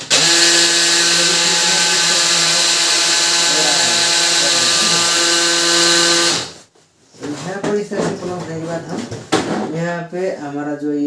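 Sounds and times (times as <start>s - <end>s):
printer motor whining: 0.0s - 6.6s.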